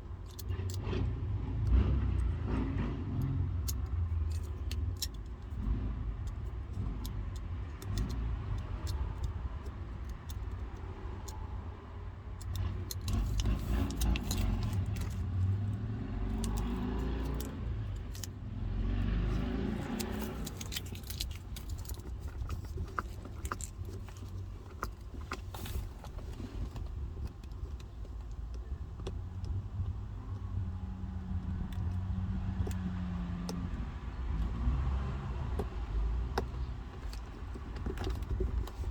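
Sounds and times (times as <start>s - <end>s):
vinyl rustling: 12.6s - 18.4s, 19.2s - 29.9s, 36.5s - 38.9s.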